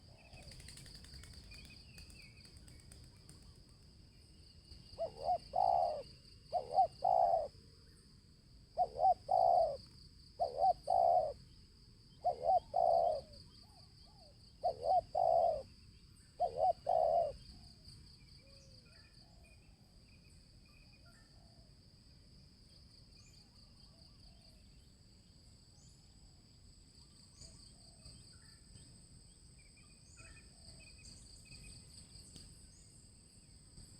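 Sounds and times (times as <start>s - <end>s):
dove cooing: 5.0s - 7.5s, 8.8s - 9.8s, 10.4s - 11.4s, 12.2s - 13.4s, 14.1s - 15.7s, 16.4s - 17.4s.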